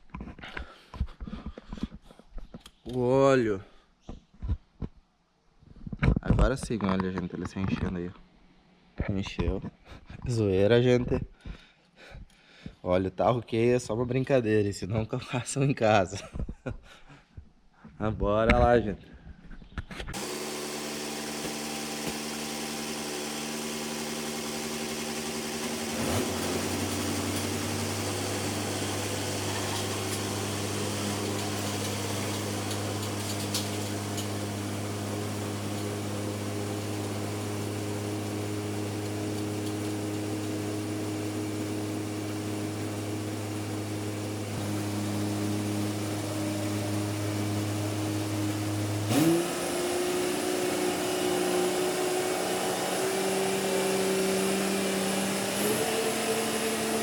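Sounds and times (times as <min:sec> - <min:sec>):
tractor engine running: 0:20.1 - 0:57.0.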